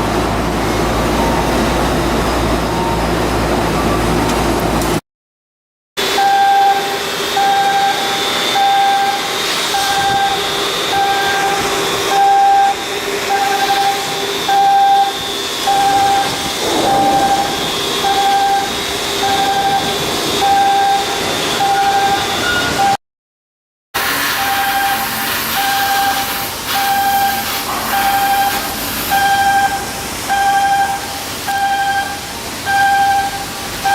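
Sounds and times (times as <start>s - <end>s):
warning beeper: 6.1s - 23.0s
machinery hum and hiss: 25.0s - 33.8s.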